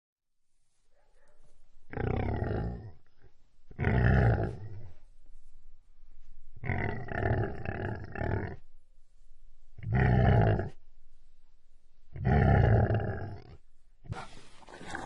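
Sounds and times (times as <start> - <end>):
large animal deep calls: 1.9 - 5.0, 6.6 - 8.6, 9.8 - 10.8, 12.1 - 13.6.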